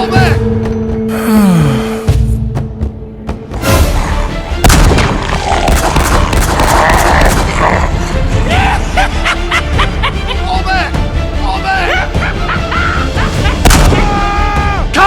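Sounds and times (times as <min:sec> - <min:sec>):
music: 0:00.0 - 0:15.0
loud booms: 0:04.6 - 0:07.6, 0:13.6 - 0:14.3
rapid cracks and crackling: 0:04.7 - 0:07.9.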